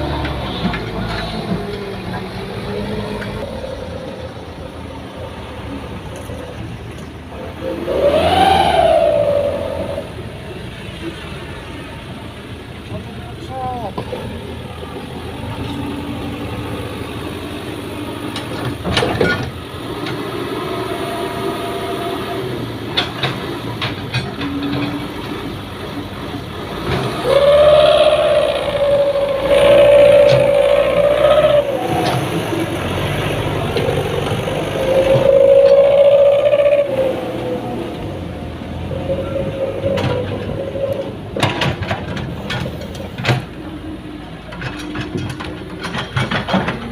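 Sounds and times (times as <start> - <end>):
heavy diesel engines running: 0.0 - 46.9
metallic clanks and knocks: 44.5 - 46.9.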